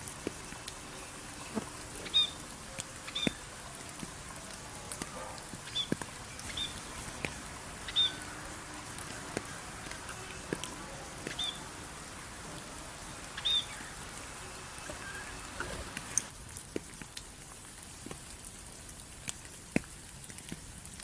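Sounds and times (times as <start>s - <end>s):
steady rain falling: 0.0s - 21.0s
water drips: 0.0s - 21.0s
bird chirping: 1.0s - 2.4s, 3.0s - 3.4s, 5.6s - 8.4s, 11.2s - 11.7s, 13.3s - 16.3s.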